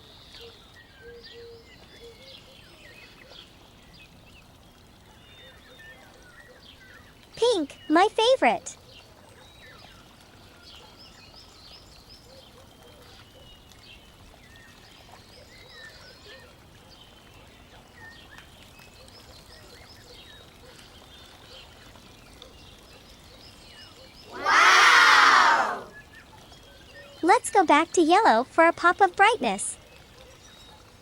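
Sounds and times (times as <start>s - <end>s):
person exclaiming loudly: 24.3s - 25.9s.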